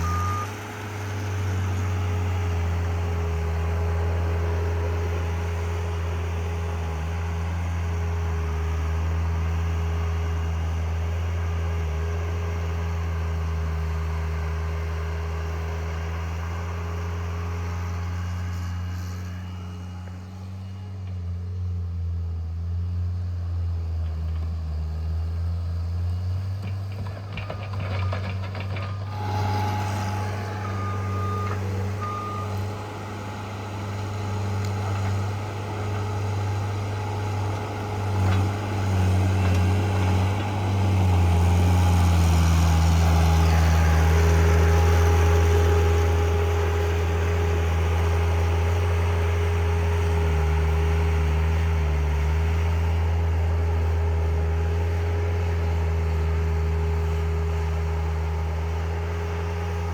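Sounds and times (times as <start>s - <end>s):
short beeps: 0.0s - 0.6s, 29.1s - 32.8s
diesel engine under load: 0.0s - 59.9s.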